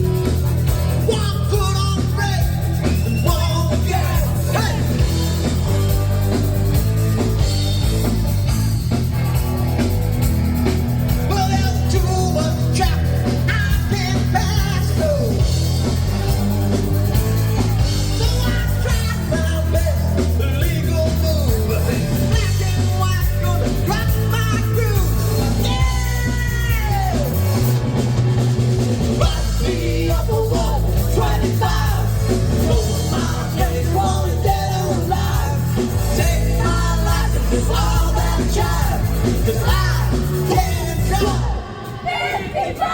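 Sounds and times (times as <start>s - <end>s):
rock music with singing: 0.0s - 42.9s.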